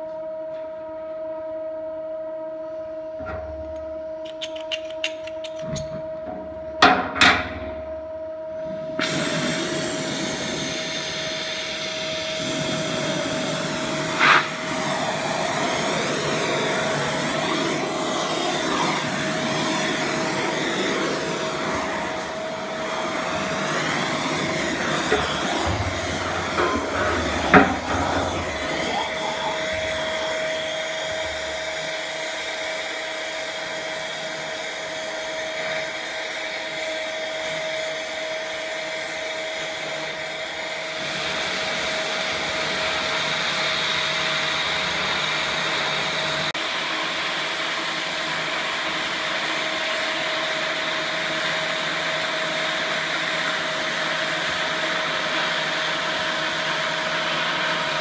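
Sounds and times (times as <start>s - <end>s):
blown air rushing with whine: 8.2s - 58.0s.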